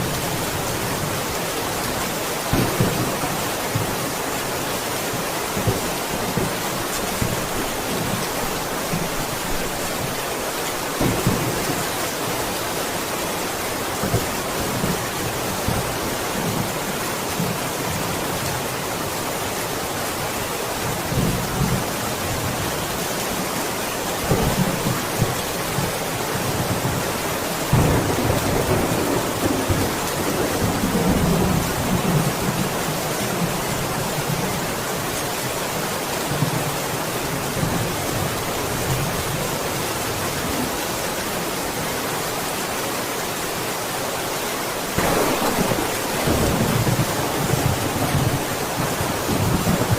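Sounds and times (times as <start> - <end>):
heavy rain: 0.0 - 49.9
thunder rumbling: 45.0 - 49.9.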